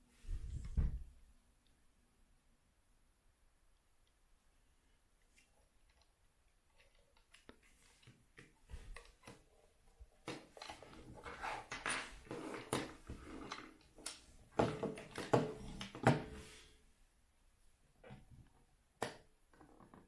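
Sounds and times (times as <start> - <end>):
plastic parts clicking and knocking: 6.7 - 16.4.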